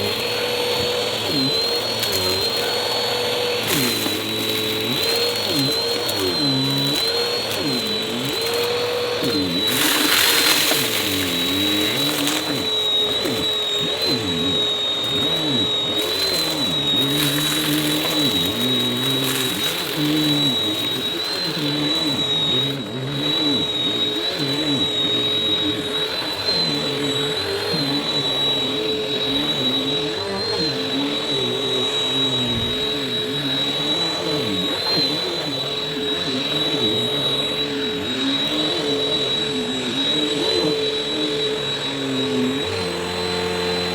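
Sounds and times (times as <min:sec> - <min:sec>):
vacuum cleaner running: 0:00.0 - 0:43.9.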